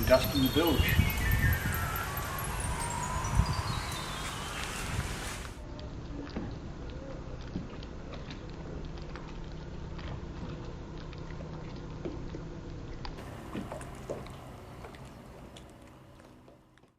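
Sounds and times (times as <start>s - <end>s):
water dripping onto wood: 5.7s - 16.9s.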